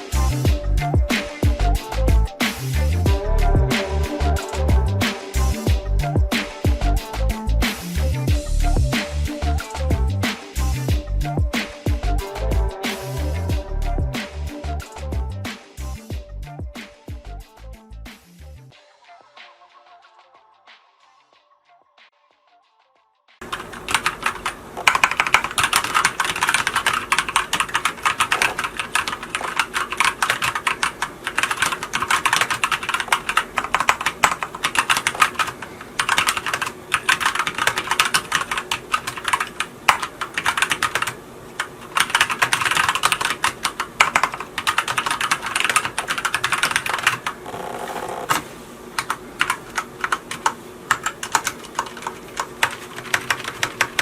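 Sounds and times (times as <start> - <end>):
fast typing on mechanical keyboard: 23.4 - 48.4, 49.0 - 54.0.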